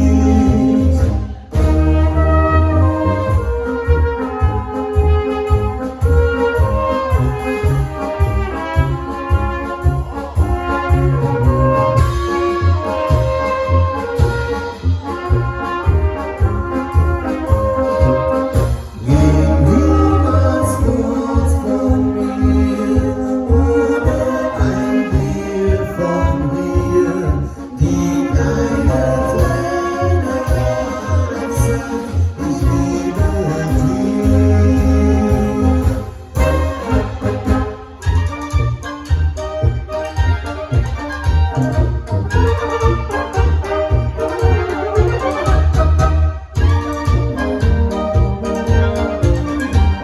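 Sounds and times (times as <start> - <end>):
person singing: 0.0 - 1.6, 19.0 - 36.7
brass band playing: 0.0 - 50.0
steady bass beat: 13.1 - 30.8, 31.6 - 50.0.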